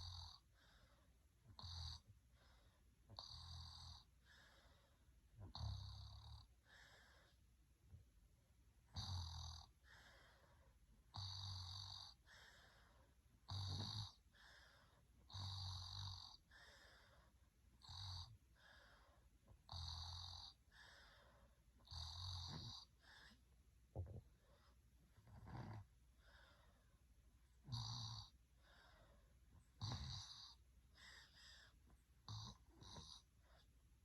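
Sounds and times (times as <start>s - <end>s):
person snoring: 13.5s - 14.2s.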